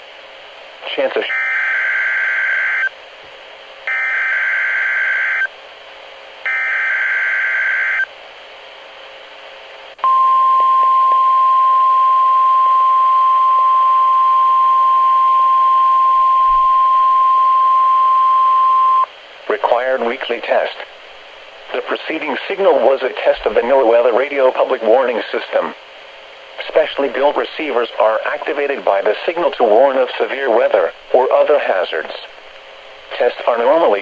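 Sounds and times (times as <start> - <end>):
steady warning alarm tone: 1.3 - 2.9, 3.9 - 5.5, 6.5 - 8.1
digital data bursts: 19.7 - 20.2.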